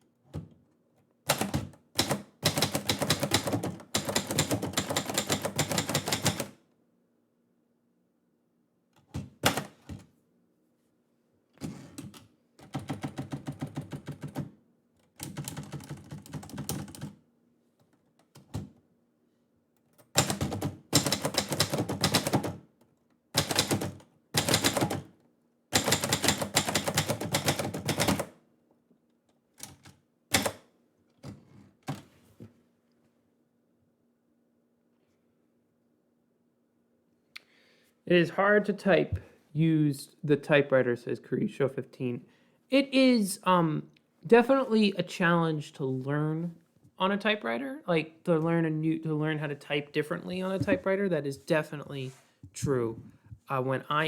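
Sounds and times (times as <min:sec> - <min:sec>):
typewriter keystrokes clattering: 0:01.3 - 0:06.6, 0:20.0 - 0:22.6, 0:23.4 - 0:25.1, 0:25.8 - 0:28.4, 0:29.6 - 0:30.7.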